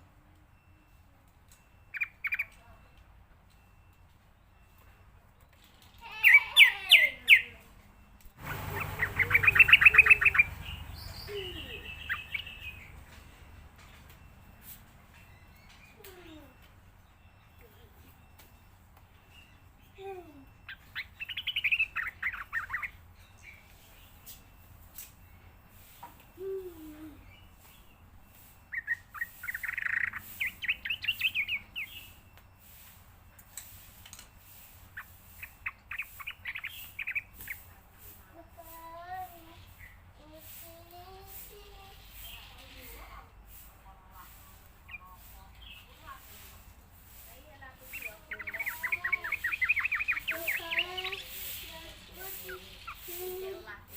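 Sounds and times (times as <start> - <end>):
bird chirping song: 0.0 - 53.9
bulbul calling: 1.6 - 2.8, 6.0 - 16.6, 20.5 - 23.5, 26.4 - 32.9, 33.6 - 38.2, 41.5 - 53.8.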